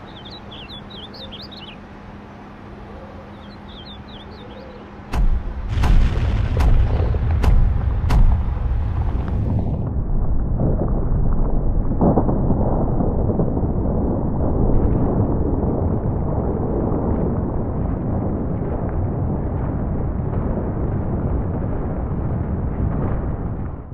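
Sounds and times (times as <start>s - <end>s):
sharp explosive crack: 5.1s - 15.9s
building collapsing rumble: 5.1s - 23.9s.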